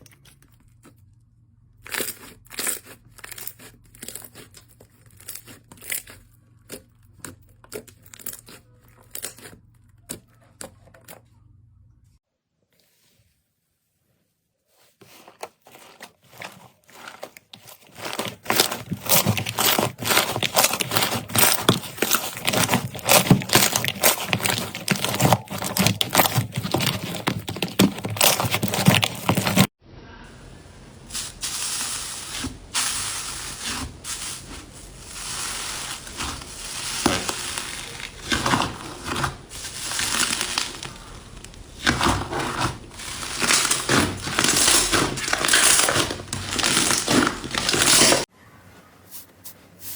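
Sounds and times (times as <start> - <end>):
slime crackling and popping: 16.9 - 29.7, 31.1 - 48.2.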